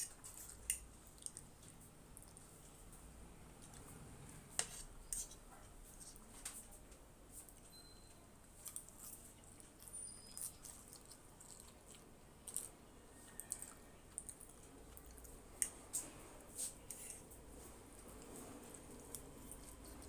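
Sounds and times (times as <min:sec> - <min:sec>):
chewing and mouth sounds: 0:00.0 - 0:02.8, 0:08.6 - 0:17.1, 0:18.0 - 0:20.0.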